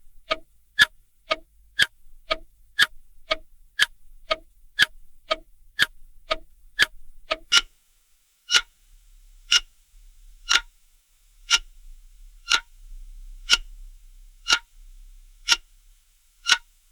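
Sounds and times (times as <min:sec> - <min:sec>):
clock ticking: 0:00.2 - 0:07.7, 0:08.5 - 0:08.7, 0:10.5 - 0:10.7, 0:11.5 - 0:11.7, 0:12.5 - 0:12.7, 0:13.5 - 0:13.7, 0:14.5 - 0:14.7, 0:15.4 - 0:15.6, 0:16.4 - 0:16.7.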